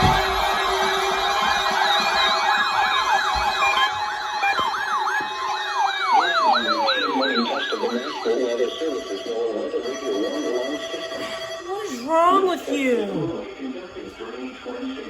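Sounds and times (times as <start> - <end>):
electronic siren yelping: 0.0 - 11.8
siren tone gliding downward: 0.4 - 11.7.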